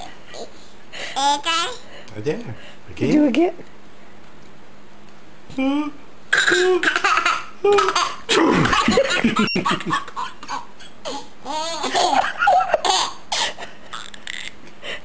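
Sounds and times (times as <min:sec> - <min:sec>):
baby laughing: 0:06.4 - 0:14.6.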